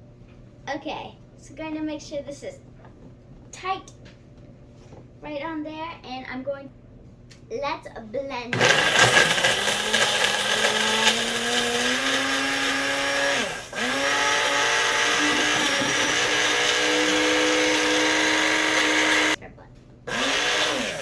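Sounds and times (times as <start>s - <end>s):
blender motor running: 8.6s - 19.4s, 20.1s - 21.0s.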